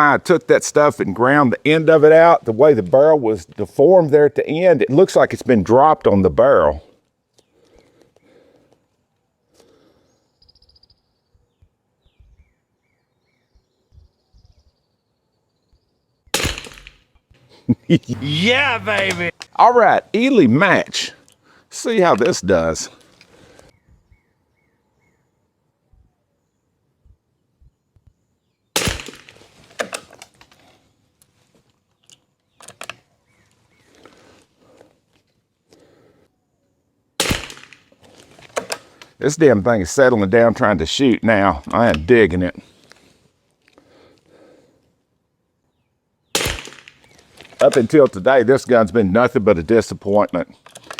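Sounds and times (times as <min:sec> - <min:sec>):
rifle handling clicks and knocks: 0:29.0 - 0:30.7, 0:31.5 - 0:33.1, 0:37.5 - 0:39.2, 0:46.6 - 0:48.2, 0:50.2 - 0:50.9
rifle shots: 0:46.4 - 0:47.1.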